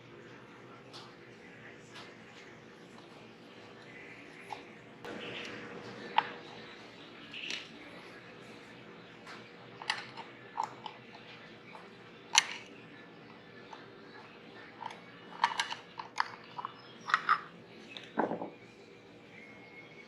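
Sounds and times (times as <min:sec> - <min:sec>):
faint steady hum: 0:00.0 - 0:20.0
tools clicking and tapping: 0:09.2 - 0:12.7, 0:13.6 - 0:18.5.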